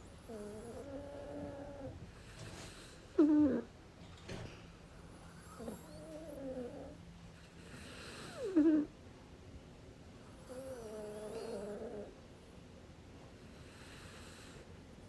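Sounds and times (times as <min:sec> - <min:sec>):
pet snoring: 0:00.0 - 0:03.7, 0:05.0 - 0:08.9, 0:10.3 - 0:12.2, 0:13.5 - 0:14.7.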